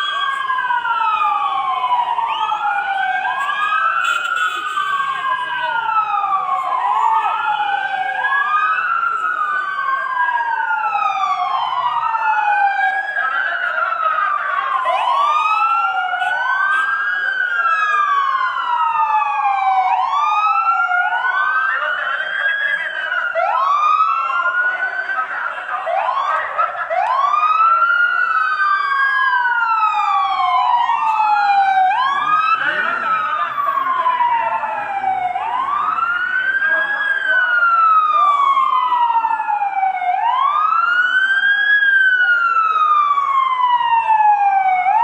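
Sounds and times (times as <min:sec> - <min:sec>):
emergency sirens wailing: 0:00.0 - 0:45.0.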